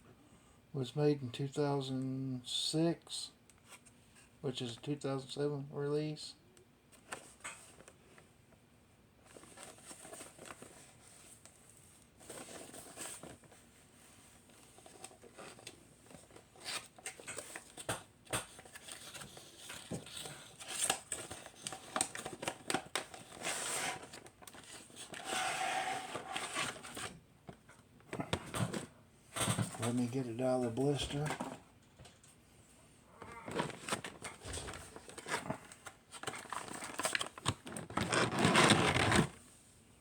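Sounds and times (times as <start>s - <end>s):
packaging being opened by hand: 14.7s - 25.5s, 33.4s - 39.4s.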